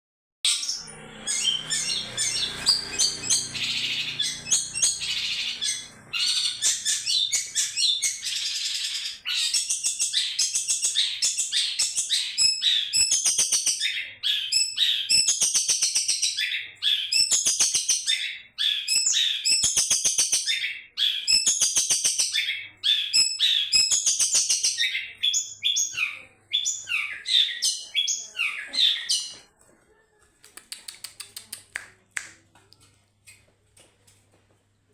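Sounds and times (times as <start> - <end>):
shrike chattering song: 0.5 - 13.8.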